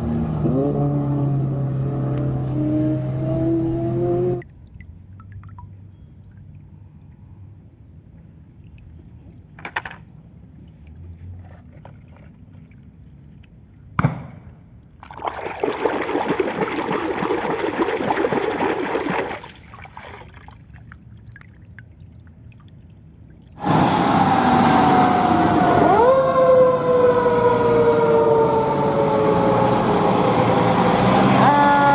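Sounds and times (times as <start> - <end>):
water splashing: 10.6 - 13.0, 14.9 - 23.6
running water: 14.9 - 23.6.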